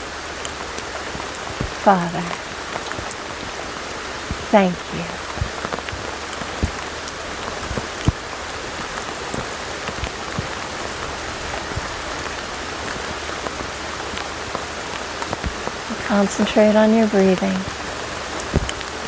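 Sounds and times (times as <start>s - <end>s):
raindrops tapping: 0.0s - 19.0s
steady rain falling: 0.0s - 19.0s.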